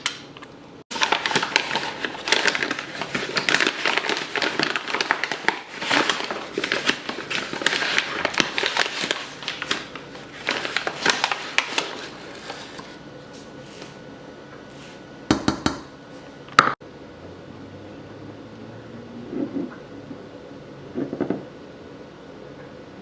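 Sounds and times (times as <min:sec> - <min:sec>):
packaging crinkling and rustling: 0:00.9 - 0:13.0.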